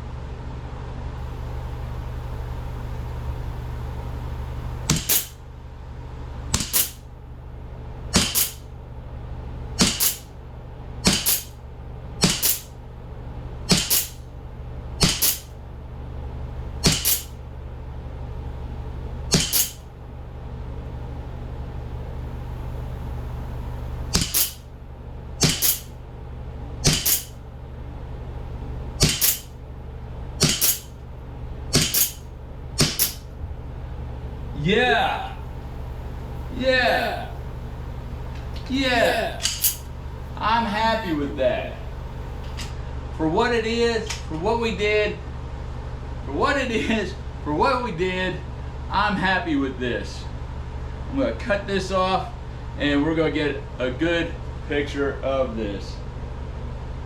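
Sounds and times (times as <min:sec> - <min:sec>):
steady low hum: 0:01.0 - 0:57.0
air pistol shots: 0:01.3 - 0:05.4, 0:06.5 - 0:07.1, 0:08.0 - 0:08.7, 0:09.8 - 0:10.4, 0:11.0 - 0:11.6, 0:12.2 - 0:12.8, 0:13.7 - 0:14.3, 0:15.0 - 0:15.6, 0:16.8 - 0:17.4, 0:19.0 - 0:19.9, 0:21.0 - 0:24.8, 0:25.4 - 0:26.0, 0:26.7 - 0:27.5, 0:28.3 - 0:29.6, 0:30.2 - 0:42.7.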